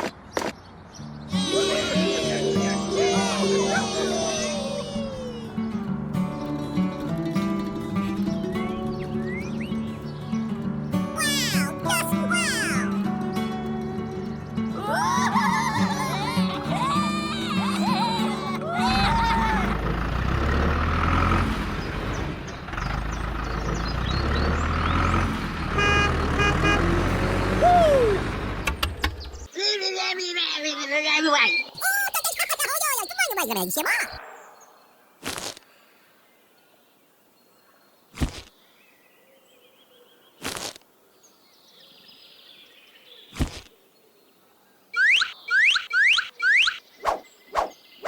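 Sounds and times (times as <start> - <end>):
birds chirping: 8.2 - 19.8, 21.7 - 27.4, 28.5 - 40.5, 41.1 - 48.0
truck engine running: 16.4 - 29.5
loud rising chirps: 45.0 - 47.8.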